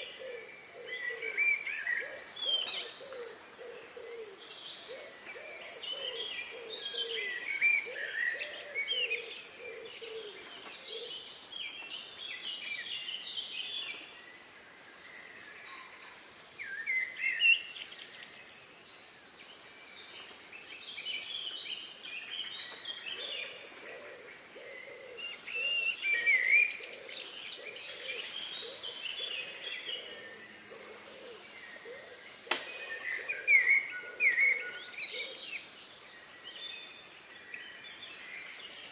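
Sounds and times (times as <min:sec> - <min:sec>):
sharp click: 0:32.5 - 0:32.7.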